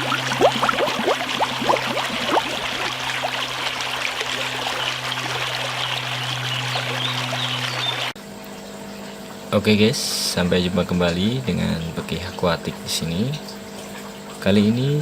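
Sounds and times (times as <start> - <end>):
bubbly gurgles: 0.0 - 8.1
aquarium water splashing and trickling: 0.0 - 9.8, 10.8 - 15.0
steady low hum: 0.0 - 12.2.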